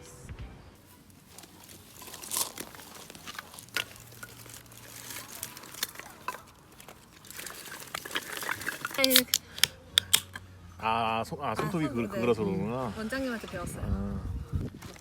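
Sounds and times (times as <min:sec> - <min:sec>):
small clicks and crinkles: 0:00.8 - 0:10.3.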